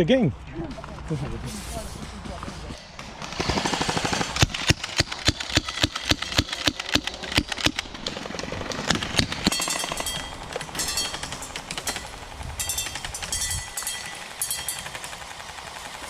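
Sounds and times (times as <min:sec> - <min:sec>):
airsoft gun shots: 0:03.2 - 0:08.0.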